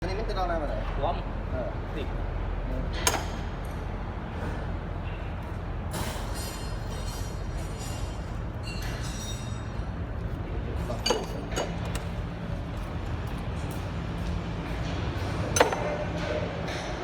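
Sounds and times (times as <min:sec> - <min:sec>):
low machine hum: 0:00.0 - 0:17.0
metal tools clinking: 0:10.9 - 0:12.1, 0:15.6 - 0:16.0.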